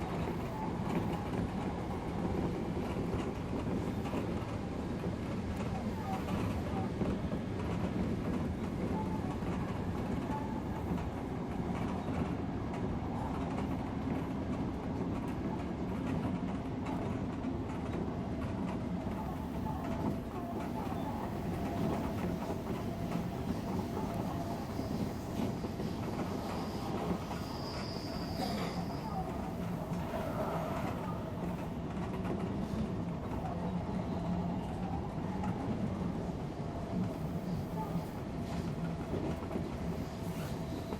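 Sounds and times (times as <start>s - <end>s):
train wheels rumbling on track: 0.0s - 40.9s.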